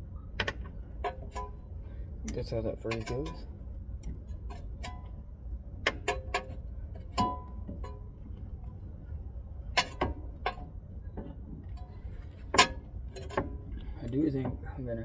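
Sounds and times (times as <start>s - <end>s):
low steady rumble: 0.0s - 15.0s
metal tools clinking on steering parts: 0.5s - 5.2s, 5.9s - 8.2s, 9.8s - 10.7s, 11.7s - 14.6s.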